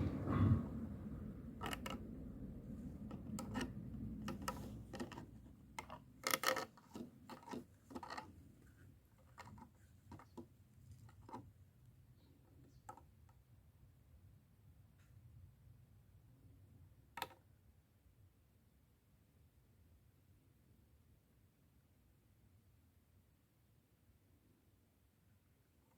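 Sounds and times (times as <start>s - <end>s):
clicks and knocks of handling: 1.6s - 2.0s, 3.0s - 8.4s, 9.2s - 11.5s.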